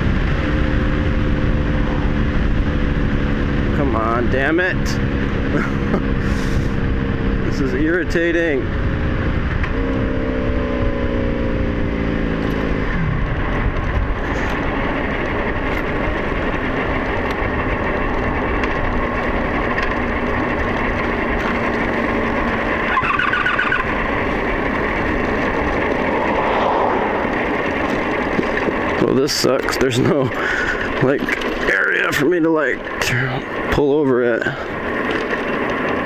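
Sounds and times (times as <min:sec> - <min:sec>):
wind rush on microphone: 0:00.0 - 0:20.2, 0:23.9 - 0:29.2
motorcycle engine: 0:00.0 - 0:36.0.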